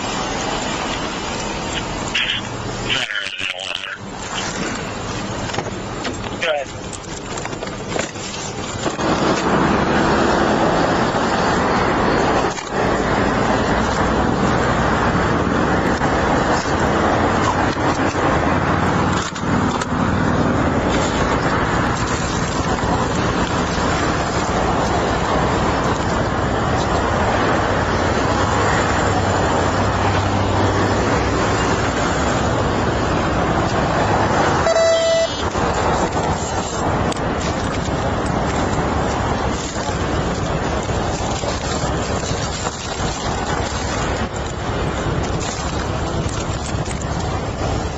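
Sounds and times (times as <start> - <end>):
vehicle rushing noise: 0.0 - 47.9
short electronic beep: 34.6 - 35.4.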